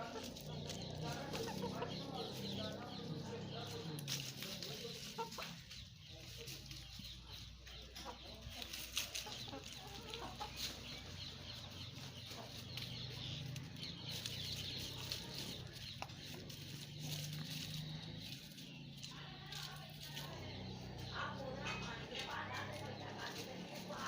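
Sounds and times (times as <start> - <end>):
hen clucking: 0.0 - 24.0.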